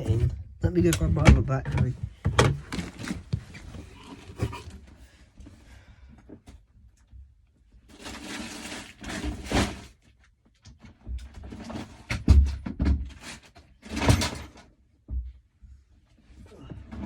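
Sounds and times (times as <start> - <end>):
knocks and thumps of handling: 0.0 - 4.9, 10.8 - 14.5.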